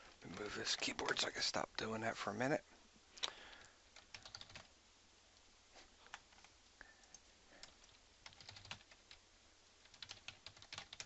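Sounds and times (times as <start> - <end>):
faint keyboard typing: 0.0 - 1.9, 3.2 - 4.8, 6.0 - 9.2, 9.8 - 11.0.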